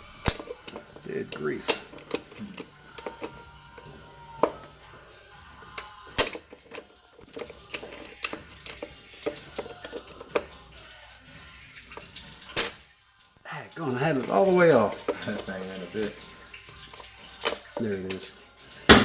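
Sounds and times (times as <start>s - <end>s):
metal tools clicking and scraping: 0.2s - 4.7s, 5.8s - 10.5s.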